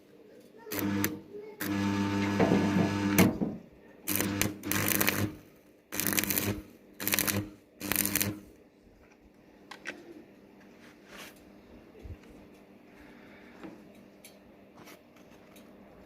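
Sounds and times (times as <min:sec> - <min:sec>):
arc welding crackling: 0:00.7 - 0:03.3, 0:04.1 - 0:08.6
welding machine hum: 0:00.7 - 0:03.4, 0:04.1 - 0:08.6.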